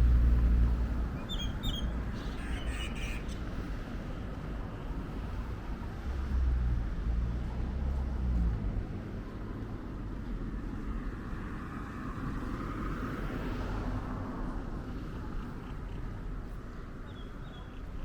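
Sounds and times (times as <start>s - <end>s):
vehicle engine rumble: 0.0s - 2.4s.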